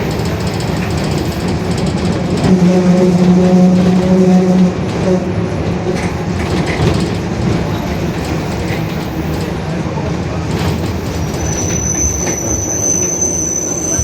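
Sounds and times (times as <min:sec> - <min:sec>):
bus running noise: 0:00.0 - 0:14.0
rear differential droning: 0:00.0 - 0:14.0.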